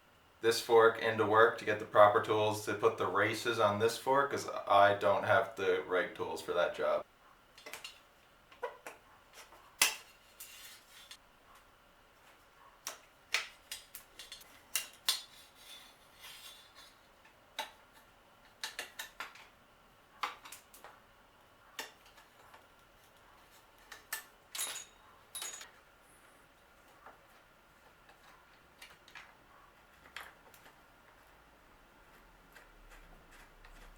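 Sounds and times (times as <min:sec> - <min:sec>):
hand tools clinking on bicycle parts: 0:23.9 - 0:25.7.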